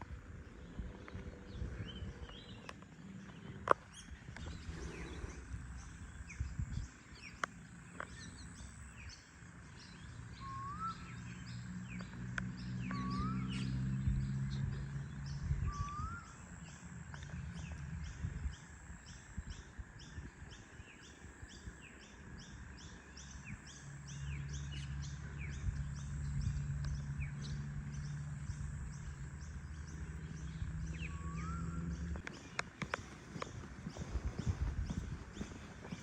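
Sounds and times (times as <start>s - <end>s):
birds chirping: 0.0s - 36.0s
rising whistled bird call: 10.3s - 11.5s, 12.8s - 13.8s, 15.6s - 16.5s, 30.9s - 32.2s.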